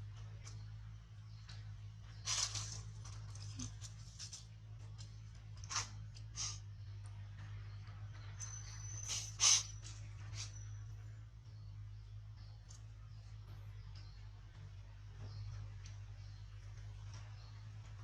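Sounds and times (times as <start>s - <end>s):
steady low hum: 0.0s - 18.0s
rustles and crunches: 2.1s - 6.6s.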